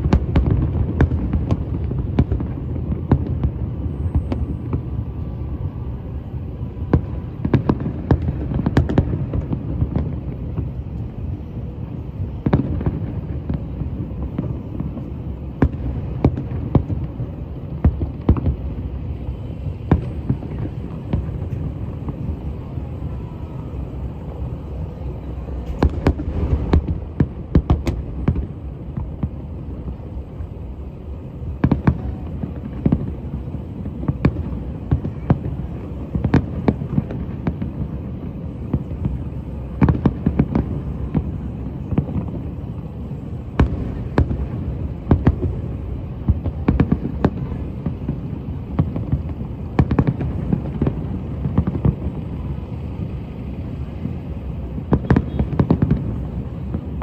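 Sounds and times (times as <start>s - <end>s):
fireworks bangs: 0.0s - 57.0s
low rumble of booms: 23.7s - 39.2s.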